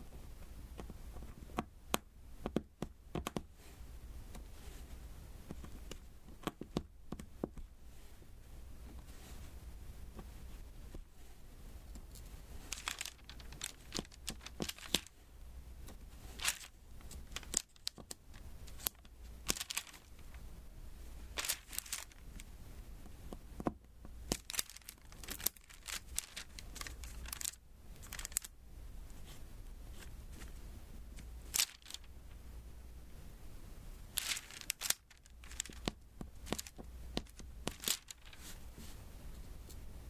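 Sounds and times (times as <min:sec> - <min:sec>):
resin beads clicking onto sticky canvas: 0:00.8 - 0:03.5, 0:11.9 - 0:15.1, 0:15.8 - 0:20.4, 0:21.4 - 0:22.5, 0:23.3 - 0:28.5, 0:31.2 - 0:32.1, 0:34.2 - 0:38.4.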